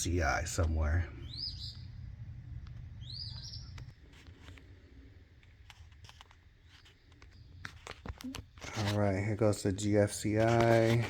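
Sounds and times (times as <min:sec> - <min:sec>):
bird chirp: 0:01.1 - 0:02.0, 0:03.0 - 0:04.0.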